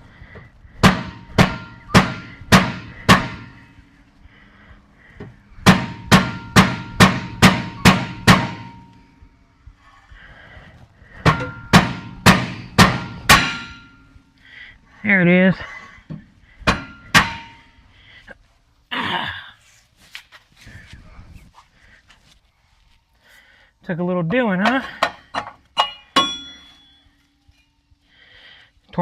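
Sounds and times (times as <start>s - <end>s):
hammer blows on steel: 0.8s - 3.8s, 5.6s - 9.3s, 11.2s - 14.2s, 16.6s - 17.8s.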